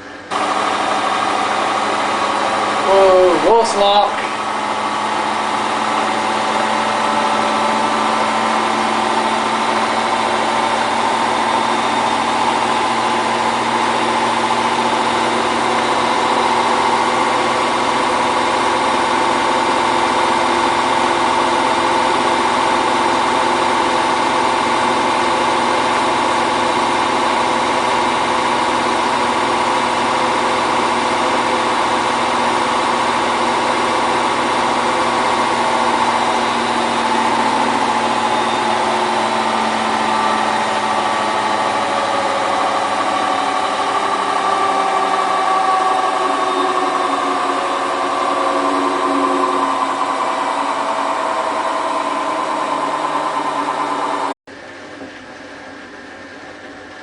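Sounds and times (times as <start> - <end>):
washing machine spinning: 0.0 - 57.0.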